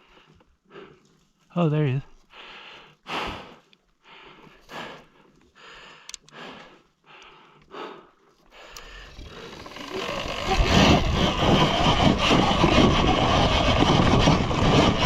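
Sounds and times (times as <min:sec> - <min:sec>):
person breathing hard: 0:00.0 - 0:01.3, 0:02.2 - 0:11.7.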